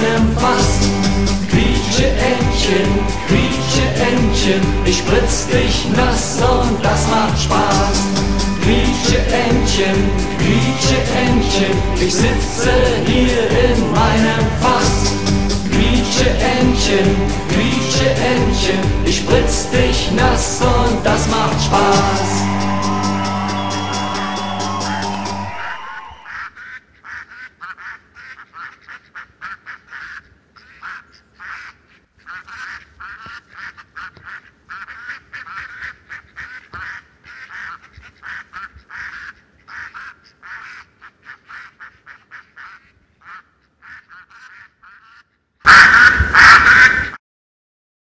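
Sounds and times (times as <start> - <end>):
ducks quacking: 0.0 - 47.2.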